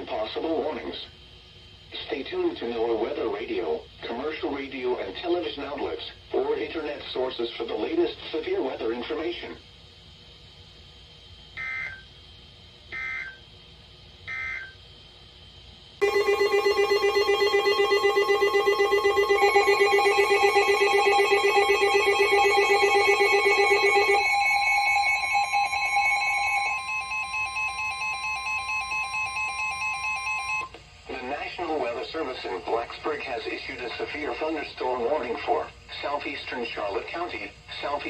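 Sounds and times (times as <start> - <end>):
pulsing alert tone: 16.0 - 27.3
warbling data tone bursts: 16.0 - 30.6.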